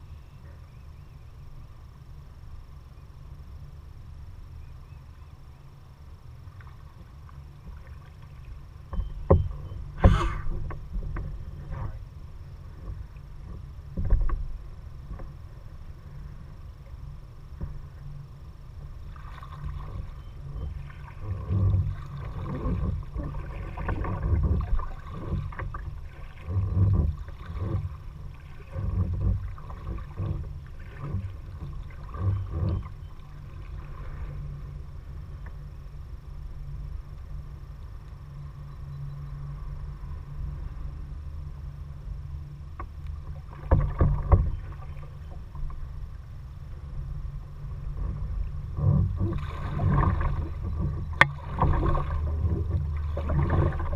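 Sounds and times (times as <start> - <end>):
steady low rumble: 0.0 - 53.9
paddle splashing in water: 6.5 - 35.6, 42.8 - 53.9.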